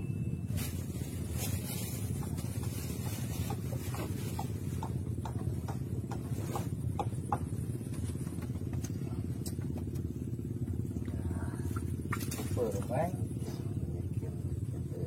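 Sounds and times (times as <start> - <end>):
boat engine rumbling: 0.0 - 15.0.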